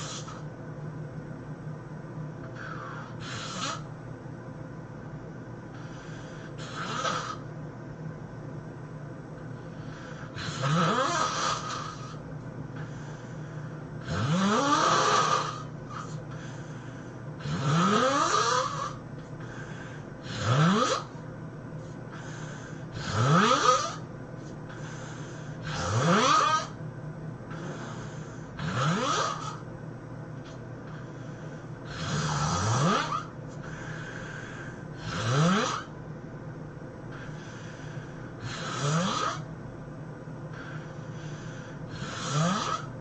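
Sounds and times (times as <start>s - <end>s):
person snoring loudly: 0.0s - 0.4s, 2.6s - 3.9s, 5.8s - 7.4s, 9.8s - 12.2s, 14.0s - 16.2s, 17.4s - 21.2s, 22.1s - 24.1s, 25.6s - 26.8s, 27.5s - 29.7s, 30.9s - 36.0s, 37.2s - 39.5s, 40.5s - 43.0s.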